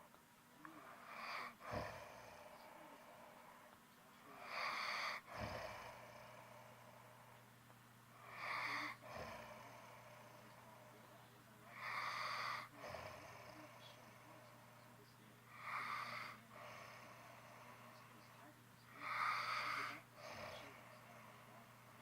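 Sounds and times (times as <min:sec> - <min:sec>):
person snoring: 0:04.3 - 0:07.3, 0:08.2 - 0:11.0, 0:11.7 - 0:14.7, 0:15.5 - 0:18.2, 0:18.9 - 0:22.0.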